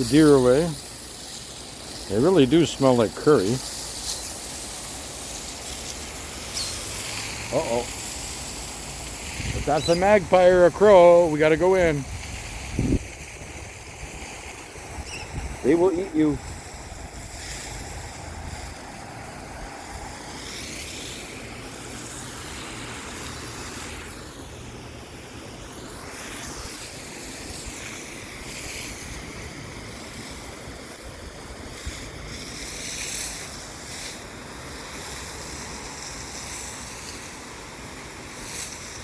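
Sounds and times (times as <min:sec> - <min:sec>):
wind rushing over microphone: 0:09.0 - 0:20.7.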